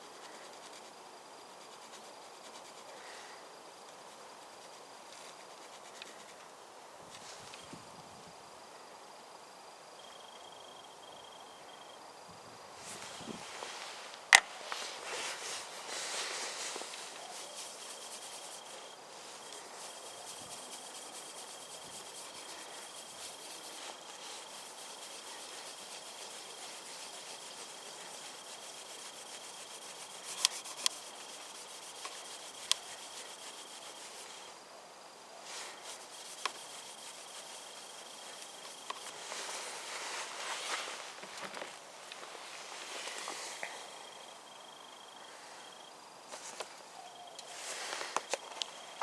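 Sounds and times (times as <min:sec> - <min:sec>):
cloth rubbing on car paint: 0:12.8 - 0:34.5, 0:35.5 - 0:43.6, 0:47.6 - 0:48.3.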